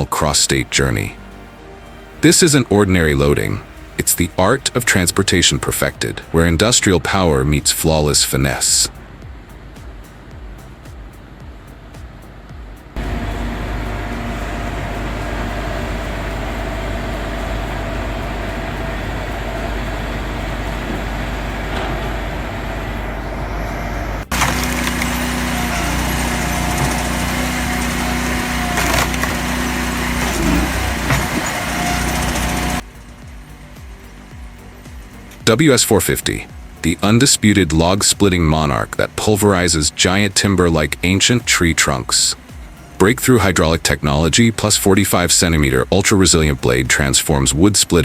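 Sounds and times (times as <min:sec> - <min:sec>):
wood-processing machine running: 0:13.0 - 0:48.0
wood cracking and splintering: 0:24.3 - 0:32.8.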